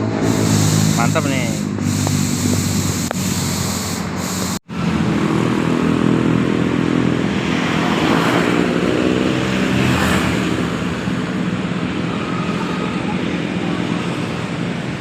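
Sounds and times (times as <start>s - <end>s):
diesel engine humming: 0.0s - 7.6s.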